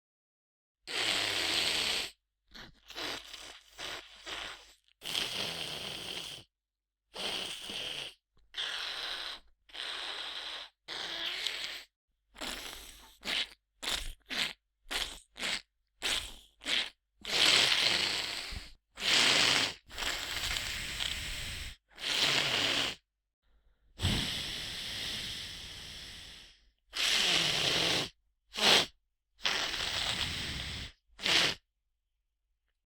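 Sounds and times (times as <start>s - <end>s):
person sniffling through blocked nose: 7.2s - 23.0s, 24.0s - 31.6s.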